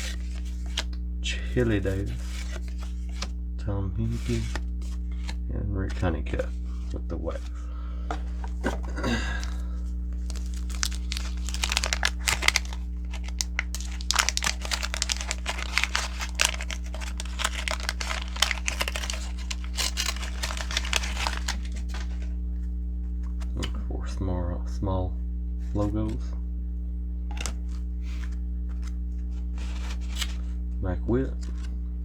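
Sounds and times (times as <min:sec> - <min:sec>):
paper wrapper crinkling and tearing: 0:00.0 - 0:03.3, 0:04.1 - 0:05.4, 0:08.3 - 0:22.4, 0:27.4 - 0:30.5.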